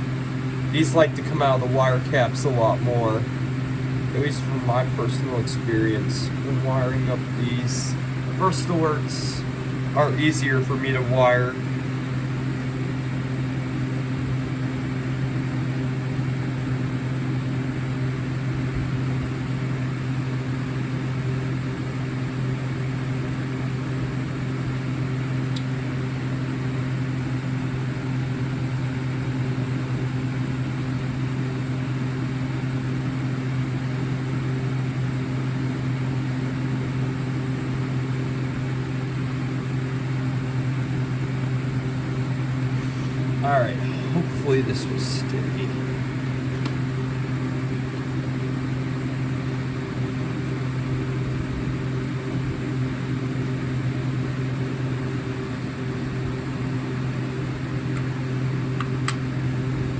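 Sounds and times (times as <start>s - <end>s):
low electrical hum: 0.0s - 59.9s.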